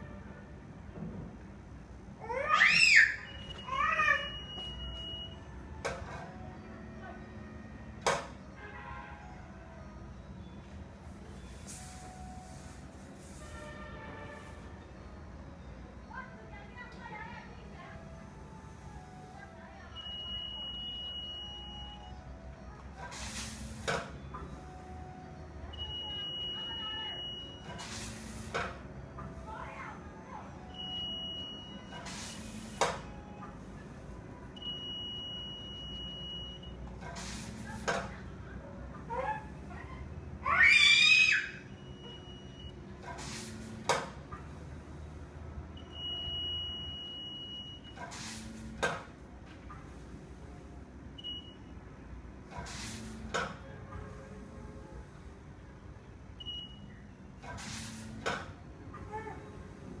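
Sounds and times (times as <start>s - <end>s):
short high beep: 3.2s - 5.5s.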